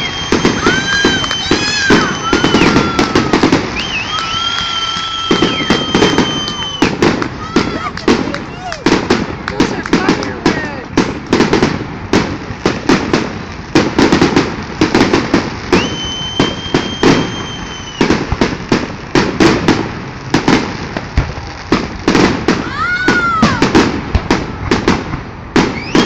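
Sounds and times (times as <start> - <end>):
firework whistle: 0.0 - 9.0, 15.0 - 18.5, 25.6 - 26.0
fireworks bangs and crackles: 0.0 - 26.0.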